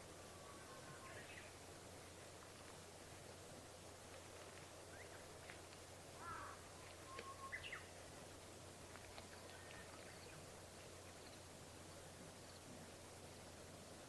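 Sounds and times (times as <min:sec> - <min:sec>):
low steady hiss: 0:00.0 - 0:14.0
faint bird chirps: 0:06.2 - 0:08.0.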